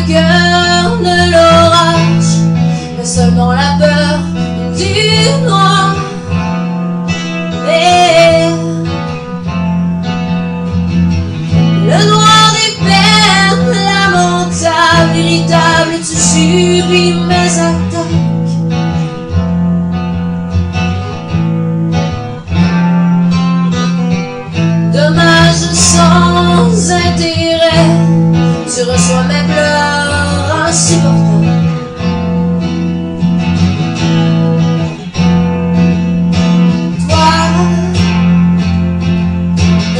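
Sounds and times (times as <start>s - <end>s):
woman singing: 0.0s - 9.2s, 11.5s - 18.7s, 24.5s - 32.2s, 36.5s - 39.9s
guitar accompaniment: 0.0s - 39.9s.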